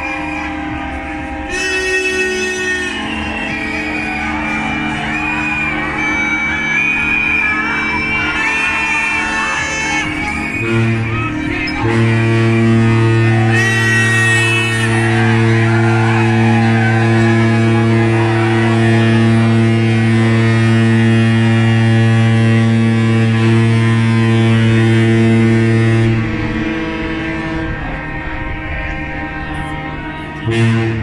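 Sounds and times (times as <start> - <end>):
ship's horn low blast: 0.0 - 31.0.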